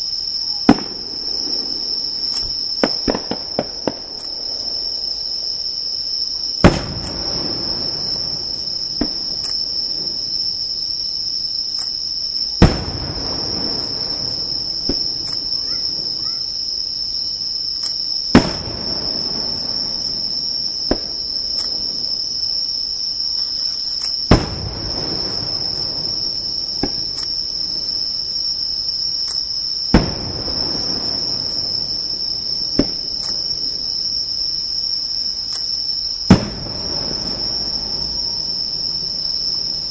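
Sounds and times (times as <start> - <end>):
firework shells booming: 0.0 - 10.8, 11.8 - 16.5, 17.9 - 22.6, 23.9 - 28.5, 29.1 - 34.4, 35.5 - 39.9
high-pitched insect trill: 0.0 - 39.9
faint firework pops: 0.5 - 4.6, 6.6 - 8.1, 8.9 - 10.2, 11.8 - 14.0, 14.7 - 16.4, 17.8 - 19.2, 20.0 - 22.1, 24.0 - 26.0, 26.7 - 27.4, 29.2 - 31.3, 32.7 - 33.8, 36.3 - 38.4.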